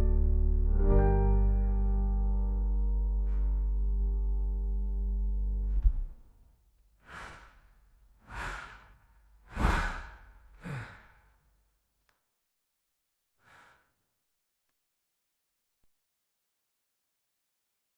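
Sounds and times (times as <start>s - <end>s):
person sighing heavily: 8.3s - 11.3s.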